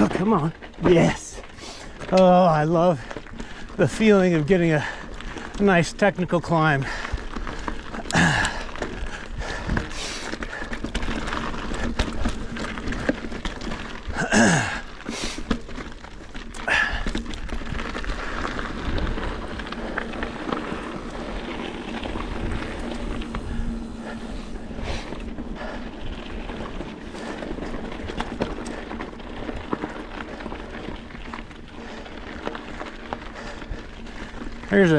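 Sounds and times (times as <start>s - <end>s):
bike tyre rumble on dirt: 0.0s - 34.9s
rider breathing hard: 1.4s - 2.1s, 3.0s - 3.8s, 4.7s - 5.6s, 6.8s - 34.7s
bike knocks and rattles: 6.9s - 19.2s.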